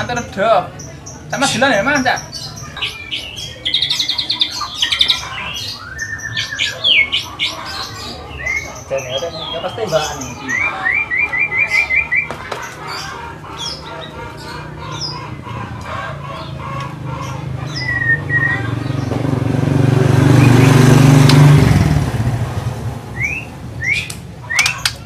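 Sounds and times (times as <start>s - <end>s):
songbirds chirping and whistling: 0.0s - 25.0s
vehicle engine passing: 12.8s - 24.9s.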